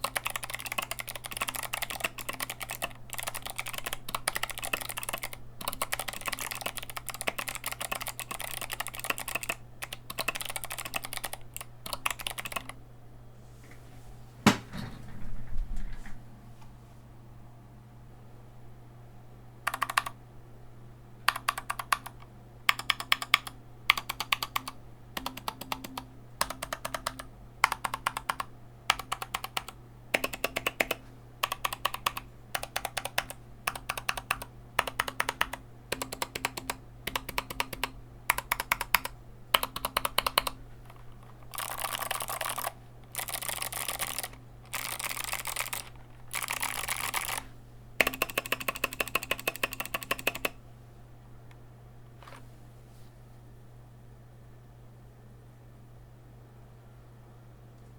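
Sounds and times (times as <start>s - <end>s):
clicky keyboard typing: 0.0s - 12.8s, 19.7s - 20.2s, 21.3s - 50.6s.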